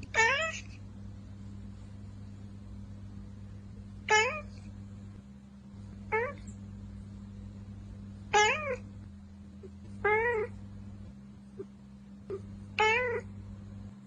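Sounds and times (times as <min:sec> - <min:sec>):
steady low hum: 0:00.0 - 0:14.0
cat meowing: 0:00.1 - 0:00.7, 0:04.1 - 0:04.6, 0:06.1 - 0:06.5, 0:08.3 - 0:08.8, 0:10.0 - 0:10.6, 0:12.3 - 0:13.3.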